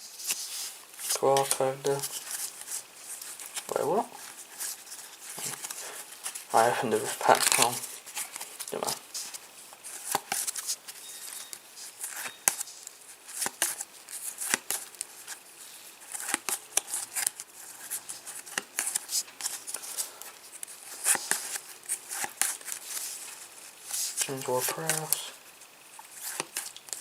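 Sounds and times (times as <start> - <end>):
trading cards flicked and snapping: 24.7 - 25.2.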